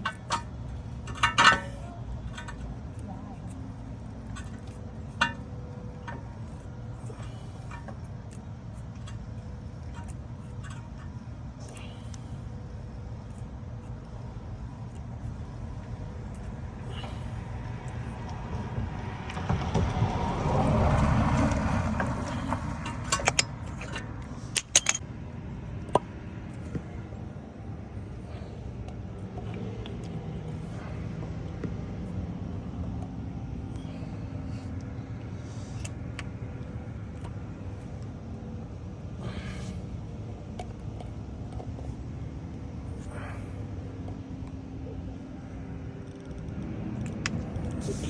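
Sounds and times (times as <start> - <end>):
metal tools clinking: 0.0 - 3.0, 22.2 - 25.0
steady low rumble: 0.0 - 48.0
metallic clinks of tools: 22.4 - 25.0.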